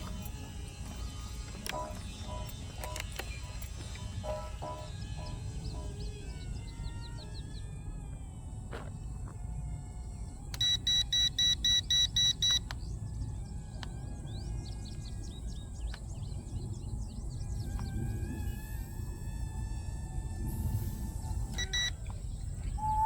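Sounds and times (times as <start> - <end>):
electronic beeps: 0.0 - 6.7, 10.6 - 12.8, 21.5 - 23.0
birds chirping: 0.0 - 19.0, 21.1 - 23.0
low wind rumble: 0.0 - 23.0.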